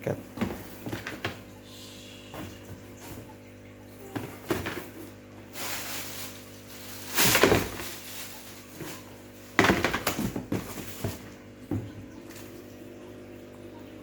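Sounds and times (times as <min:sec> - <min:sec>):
faint steady hum: 0:00.0 - 0:14.0
packaging rustling and knocking: 0:00.4 - 0:01.5, 0:04.2 - 0:12.0.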